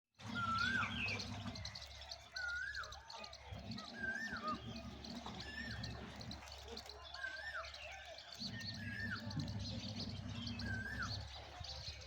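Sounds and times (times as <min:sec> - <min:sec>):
bird whistled call: 0:00.2 - 0:06.0, 0:10.4 - 0:11.3
birds chirping and twittering: 0:00.2 - 0:12.0.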